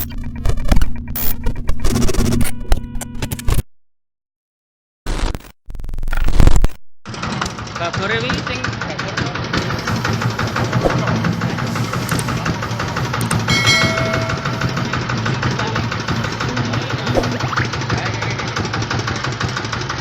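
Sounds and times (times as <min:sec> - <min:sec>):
short pitched tone: 0:13.5 - 0:17.8.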